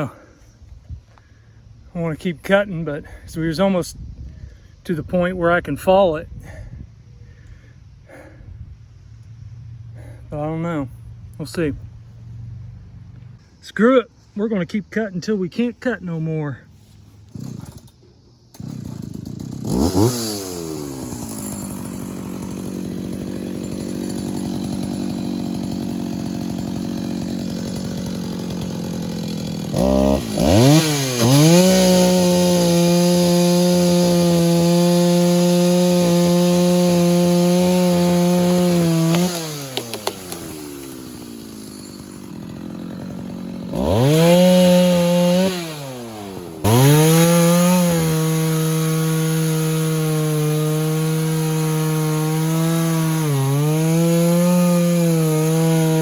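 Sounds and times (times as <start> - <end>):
chainsaw cutting wood: 9.2 - 10.2, 16.8 - 56.0.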